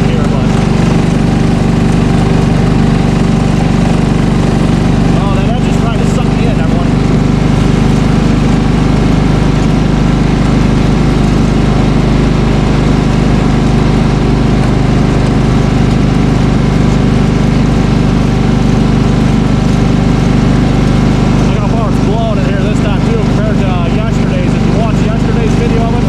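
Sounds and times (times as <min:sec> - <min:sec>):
snow blower engine running: 0:00.0 - 0:26.0.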